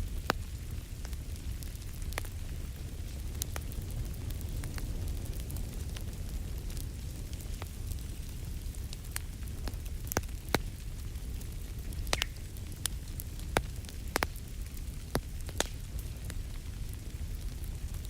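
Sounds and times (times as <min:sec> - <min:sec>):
wood fire crackling: 0:00.0 - 0:18.0
sharp pops and snaps: 0:12.0 - 0:12.4, 0:13.4 - 0:14.4, 0:15.0 - 0:16.4.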